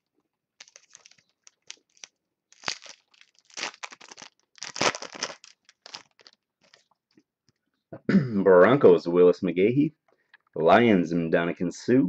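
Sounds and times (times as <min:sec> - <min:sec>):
foil wrapper tearing and crinkling: 0:00.6 - 0:06.9.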